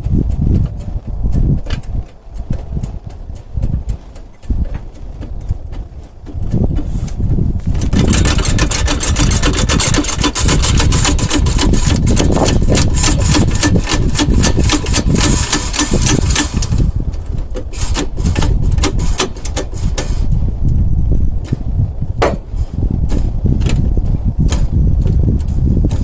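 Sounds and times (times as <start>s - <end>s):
impact wrench hammering: 7.8s - 16.8s.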